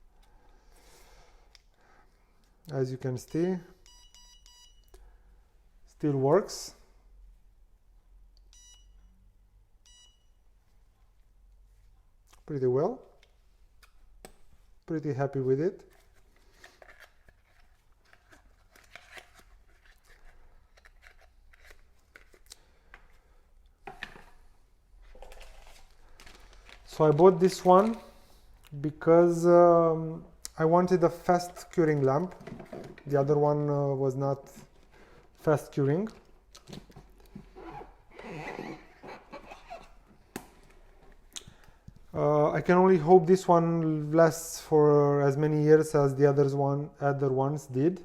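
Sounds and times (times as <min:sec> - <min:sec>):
clicks and rustles of handling: 0:15.8 - 0:23.2.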